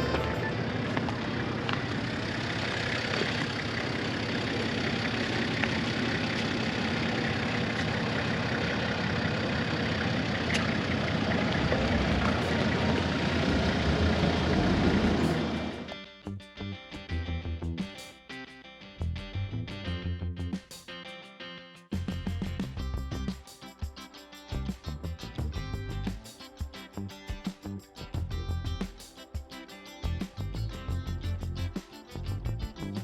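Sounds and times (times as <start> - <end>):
vehicle engine and road noise: 0.0 - 16.0.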